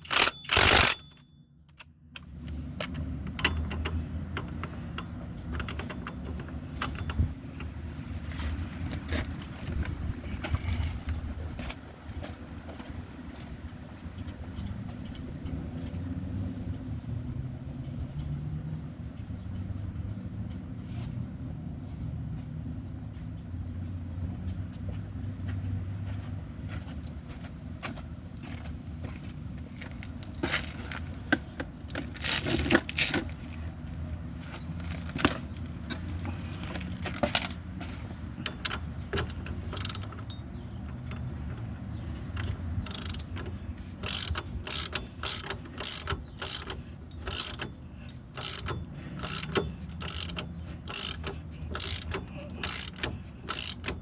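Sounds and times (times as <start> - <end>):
metal tools clinking: 0.0 - 1.8, 34.8 - 37.6, 38.4 - 54.0
ratchet wrench clicking: 0.0 - 1.9, 38.4 - 54.0.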